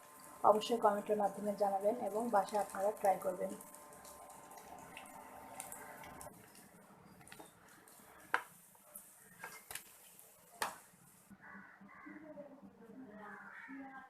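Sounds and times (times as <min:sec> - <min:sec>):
crow cawing: 0:11.4 - 0:12.3, 0:13.3 - 0:14.0.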